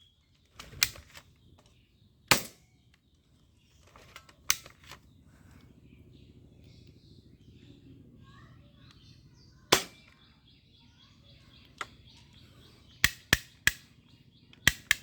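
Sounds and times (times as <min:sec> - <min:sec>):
birds chirping: 0:00.0 - 0:15.0
toy air gun shots: 0:09.7 - 0:10.1, 0:13.0 - 0:13.9, 0:14.6 - 0:15.0.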